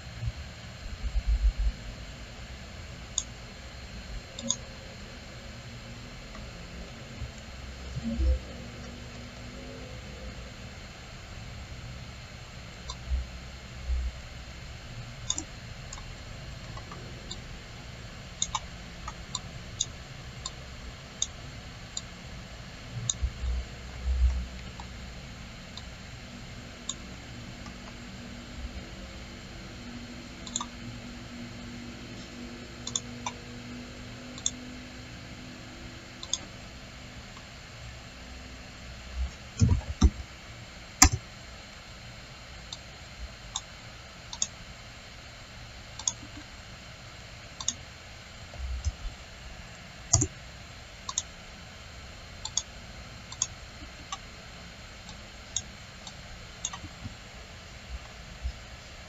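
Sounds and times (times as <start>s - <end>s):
computer mouse clicks: 3.1s - 3.3s, 4.4s - 4.7s, 15.2s - 17.4s, 18.4s - 20.6s, 23.0s - 23.6s, 26.8s - 27.0s, 30.4s - 30.8s, 32.8s - 33.4s, 34.4s - 34.6s, 36.2s - 36.5s, 39.2s - 40.2s, 41.0s - 41.2s, 44.3s - 44.6s, 46.0s - 46.5s, 47.6s - 47.8s, 50.1s - 50.4s, 51.0s - 51.3s, 52.4s - 52.7s, 53.3s - 54.2s, 55.1s - 57.2s.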